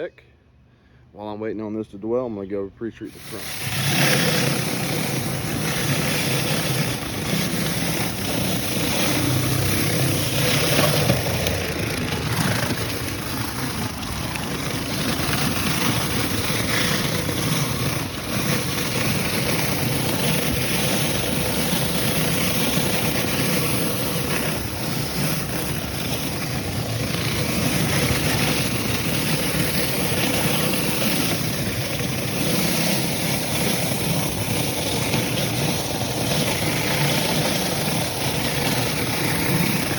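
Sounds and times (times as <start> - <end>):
pressure washer engine running: 3.1 - 39.9
water spray hissing: 3.1 - 39.9.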